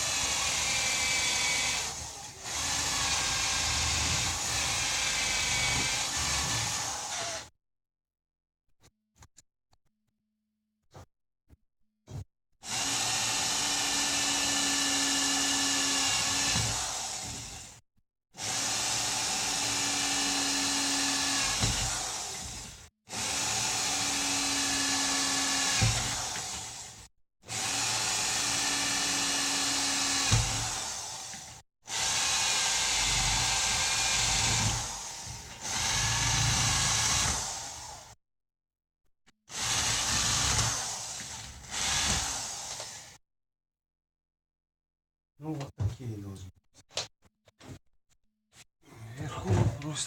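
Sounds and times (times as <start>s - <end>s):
electric drill boring: 0.0s - 7.5s, 12.6s - 17.8s, 18.4s - 38.2s, 39.5s - 43.2s.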